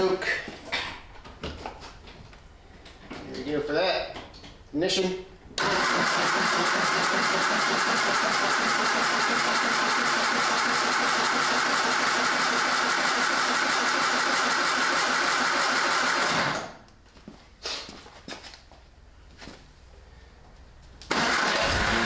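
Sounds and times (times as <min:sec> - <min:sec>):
car engine running on choke: 0:05.6 - 0:16.6, 0:21.1 - 0:22.0.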